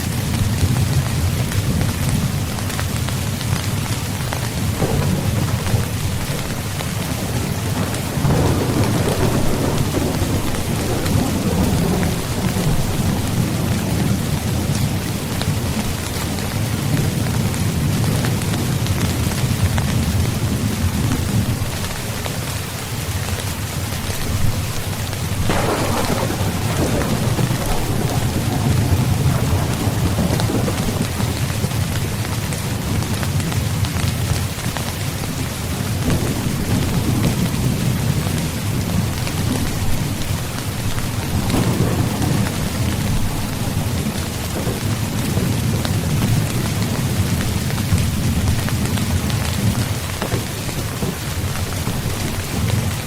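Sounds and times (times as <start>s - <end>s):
thunder rumbling: 0.0s - 22.4s, 23.8s - 53.0s
heavy rain: 0.0s - 53.0s
raindrop ticks: 0.3s - 53.0s
sharp thunder peal: 4.6s - 14.7s, 25.4s - 31.9s, 40.9s - 48.9s.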